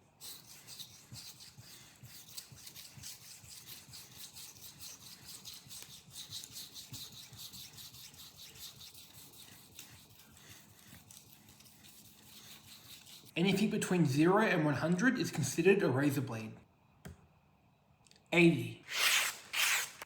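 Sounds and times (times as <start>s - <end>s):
knife scraping on whetstone: 0.2s - 13.3s.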